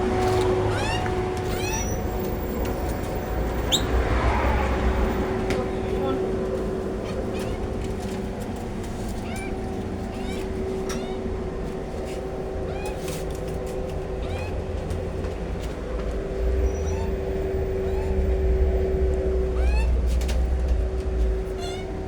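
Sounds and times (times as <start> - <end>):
street sweeper engine humming: 0.0 - 22.0
magpies chirping: 0.1 - 5.3, 6.9 - 8.2, 9.2 - 11.3, 12.6 - 13.2, 14.2 - 14.8, 16.4 - 20.2.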